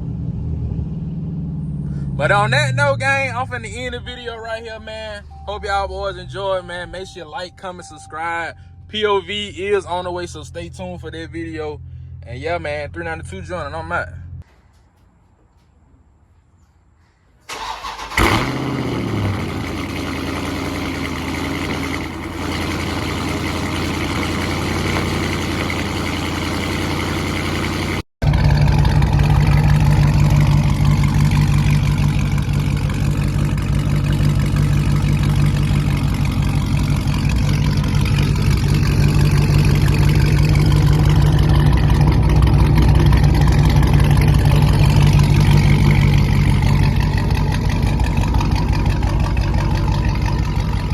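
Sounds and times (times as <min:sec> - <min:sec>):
car engine starting and running: 0:00.0 - 0:14.4, 0:17.5 - 0:50.9.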